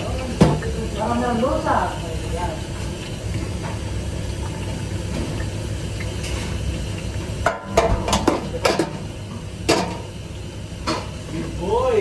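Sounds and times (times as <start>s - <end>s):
kitchen utensils clattering on pots: 0.0s - 1.4s, 7.4s - 9.1s, 9.7s - 10.1s.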